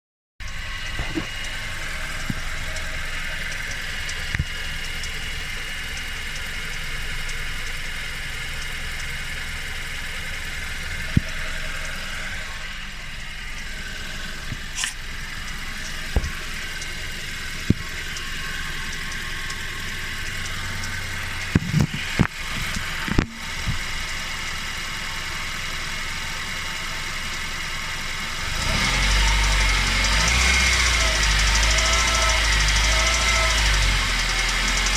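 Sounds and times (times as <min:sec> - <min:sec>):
sharp clicks: 0:00.4 - 0:12.0, 0:12.7 - 0:24.2
car engine idling: 0:00.4 - 0:34.9.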